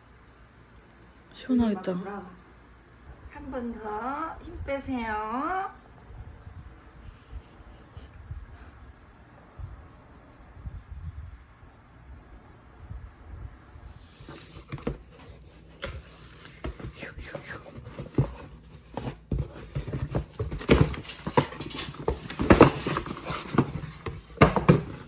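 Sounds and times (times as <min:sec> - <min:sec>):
rustling: 0:13.9 - 0:25.0.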